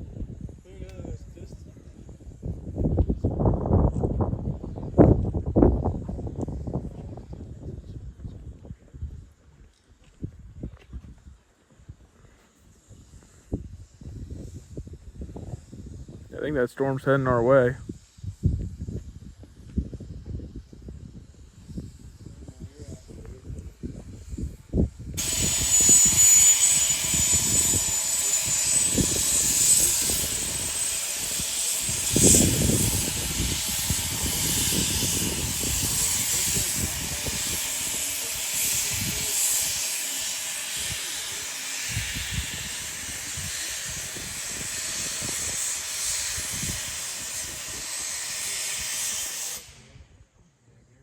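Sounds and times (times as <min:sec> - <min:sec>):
steam locomotive hissing steam: 0:11.7 - 0:50.4.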